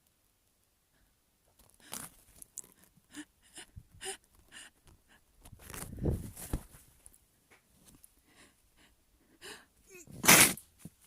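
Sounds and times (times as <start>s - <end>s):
person gasping breaths: 0.9s - 5.3s, 8.2s - 10.2s
person sneezing: 9.9s - 10.6s.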